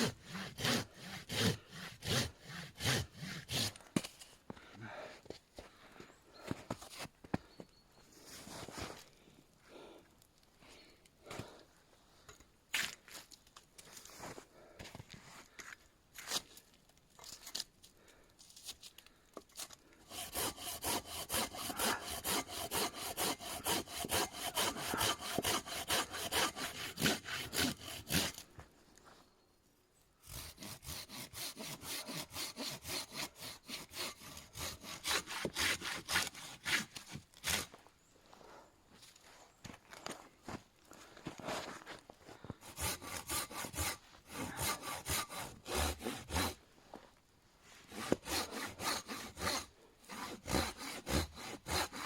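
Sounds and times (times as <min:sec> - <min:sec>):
hand saw cutting wood: 0:00.0 - 0:04.1, 0:19.6 - 0:28.5, 0:30.2 - 0:37.8, 0:42.6 - 0:46.6, 0:47.8 - 0:52.0.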